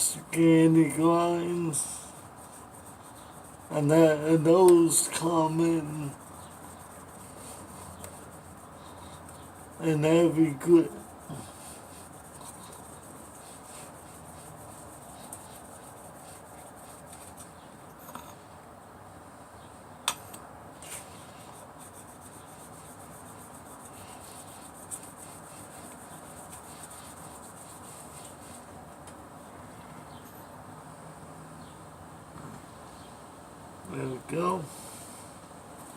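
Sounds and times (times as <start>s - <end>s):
blade rubbing on abrasive: 0.0s - 17.5s, 20.8s - 28.7s.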